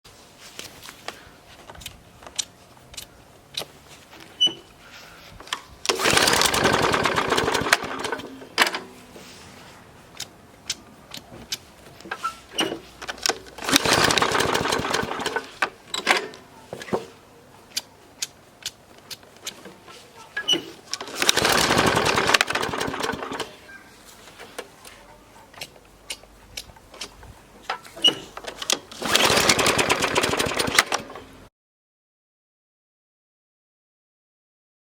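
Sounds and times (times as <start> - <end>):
lawnmower engine pull-starting: 4.4 - 9.4, 10.1 - 17.1, 17.7 - 31.5.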